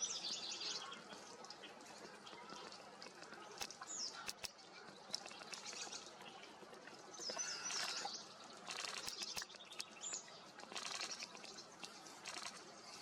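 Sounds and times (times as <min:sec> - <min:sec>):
outdoor background: 0:00.0 - 0:13.0
songbirds chirping: 0:00.0 - 0:13.0
sharp clicks: 0:03.6 - 0:04.6, 0:08.7 - 0:10.0.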